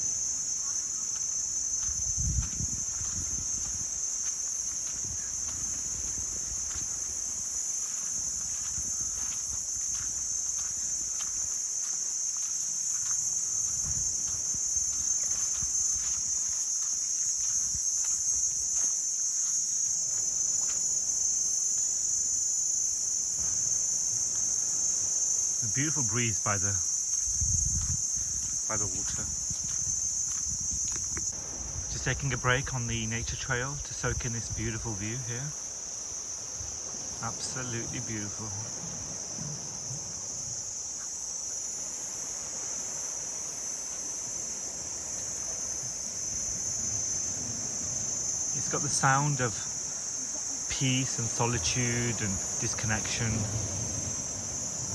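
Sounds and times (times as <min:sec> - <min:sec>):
faint footfalls on trail: 0:00.0 - 0:22.1, 0:22.8 - 0:31.9
insect chorus drone: 0:00.0 - 0:54.9.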